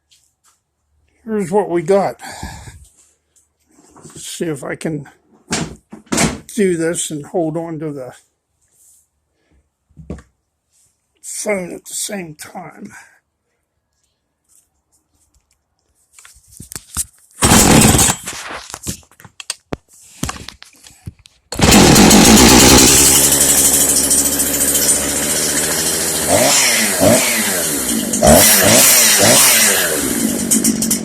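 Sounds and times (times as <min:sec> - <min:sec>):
chainsaw starting and revving: 0:17.4 - 0:18.4, 0:21.5 - 0:31.0.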